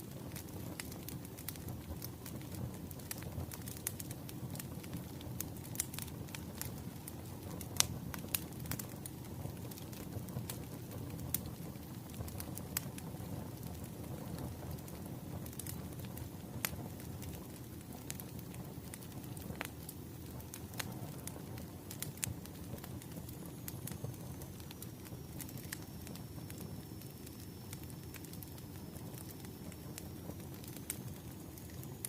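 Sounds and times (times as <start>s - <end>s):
fire pops and snaps: 0.0s - 32.0s
wood fire crackling: 0.0s - 32.0s.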